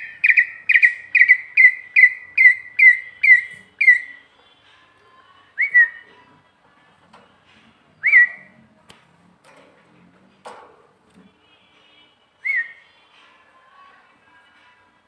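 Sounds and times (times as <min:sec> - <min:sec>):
bird calling hollow notes: 0:00.0 - 0:04.2.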